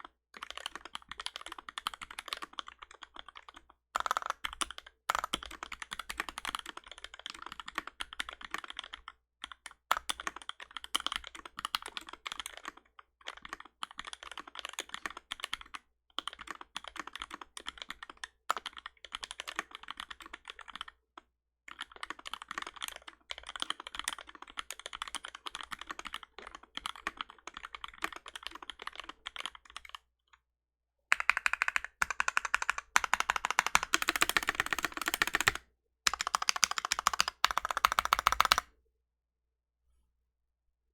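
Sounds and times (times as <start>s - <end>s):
typing on mechanical keyboard: 0.0s - 21.0s, 21.7s - 30.0s, 31.1s - 38.7s.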